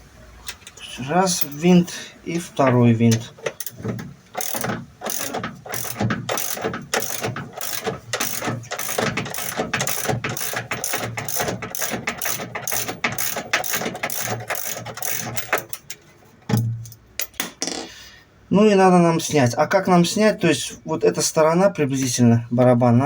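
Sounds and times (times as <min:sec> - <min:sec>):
ratchet wrench clicking: 0:03.1 - 0:16.0.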